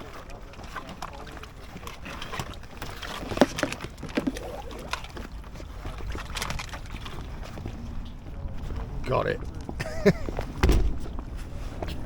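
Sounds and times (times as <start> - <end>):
paddle splashing in water: 0.0 - 8.7
wind rumbling on microphone: 0.0 - 12.0.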